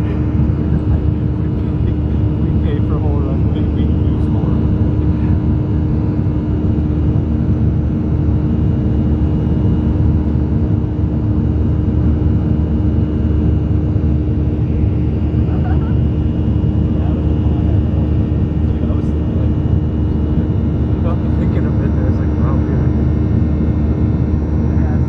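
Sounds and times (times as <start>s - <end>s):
airplane cabin engine drone: 0.0s - 25.0s
constant low hum: 0.0s - 25.0s.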